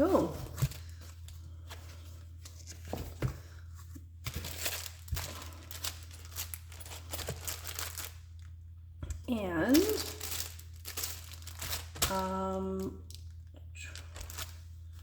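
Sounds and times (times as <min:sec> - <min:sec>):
paper rustling and crinkling: 0:00.0 - 0:08.3, 0:09.8 - 0:12.3, 0:13.8 - 0:15.0
low electrical hum: 0:00.0 - 0:15.0.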